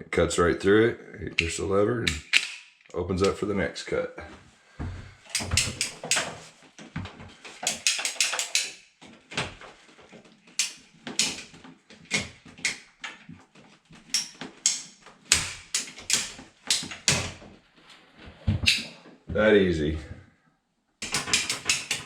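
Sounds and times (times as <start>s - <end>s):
pipe cutter ratcheting clicks: 5.3s - 6.3s, 7.6s - 8.8s, 10.6s - 11.5s, 14.1s - 17.2s, 21.0s - 22.0s.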